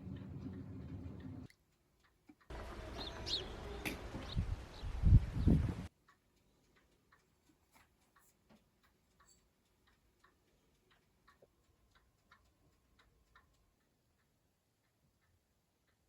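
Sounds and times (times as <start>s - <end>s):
clock ticking: 0.0s - 2.6s, 5.9s - 16.0s
birdsong: 2.5s - 5.7s.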